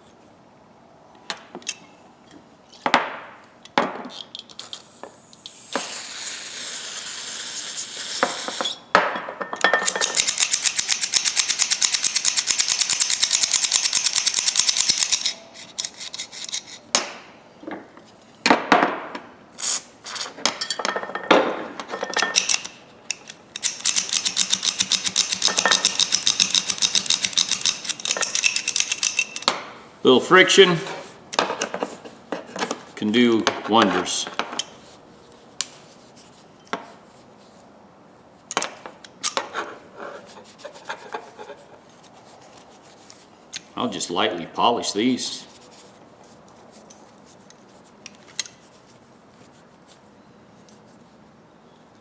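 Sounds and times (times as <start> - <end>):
pliers metal clinks and knocks: 9.4 - 17.1, 21.9 - 29.6
fast metallic clicking: 9.8 - 15.4, 22.3 - 29.5.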